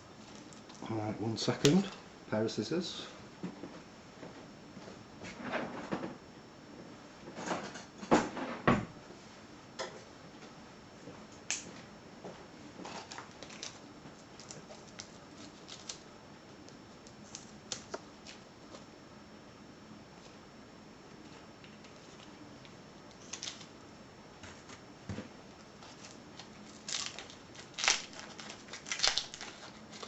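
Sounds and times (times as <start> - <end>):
plastic packaging crinkling: 12.8 - 16.1, 21.8 - 23.8, 25.8 - 30.0
scissors snipping plastic: 26.0 - 30.0.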